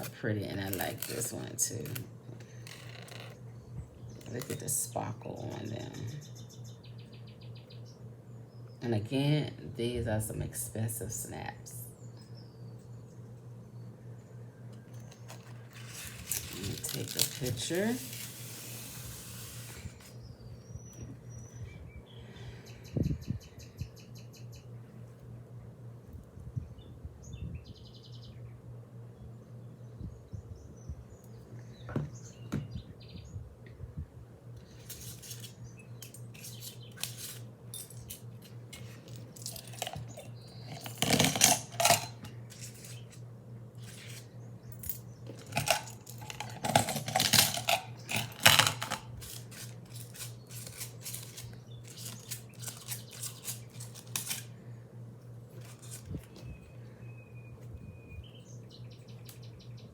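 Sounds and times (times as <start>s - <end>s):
low steady hum: 0.0s - 59.9s
metal charms clinking: 34.8s - 43.2s, 43.8s - 54.5s.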